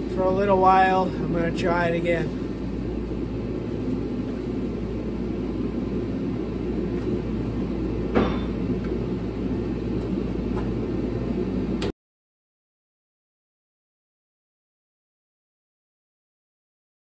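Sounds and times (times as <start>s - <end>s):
low machine drone: 0.0s - 11.9s.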